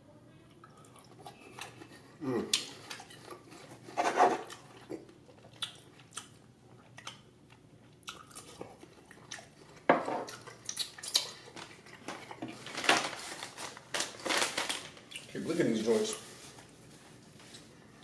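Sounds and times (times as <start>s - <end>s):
chewing and biting on steak: 0.8s - 12.6s.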